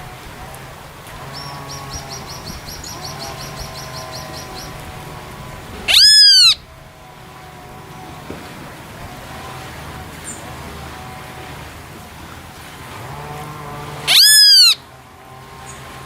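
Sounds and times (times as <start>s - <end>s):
loud rising and falling bird call: 0.8s - 7.0s, 13.6s - 15.0s
bird chirping rapidly: 1.3s - 4.8s, 5.9s - 6.7s, 14.1s - 14.8s.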